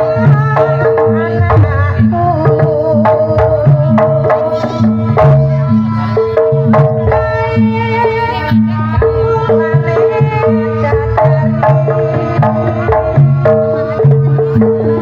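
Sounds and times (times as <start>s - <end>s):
hand drums beating: 0.0s - 15.0s
sustained melodic tones: 3.7s - 9.0s.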